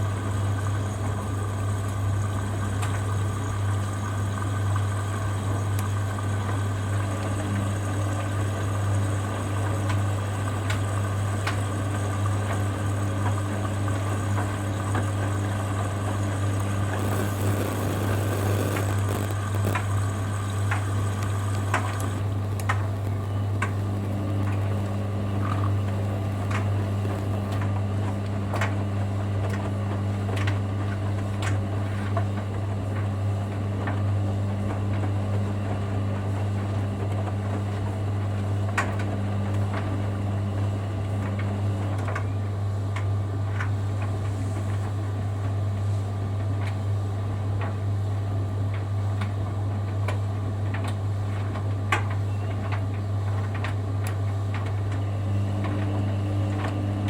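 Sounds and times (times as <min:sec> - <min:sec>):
laundry machines humming: 0:00.0 - 0:41.9, 0:52.5 - 0:57.0
higher hum: 0:16.8 - 0:27.7.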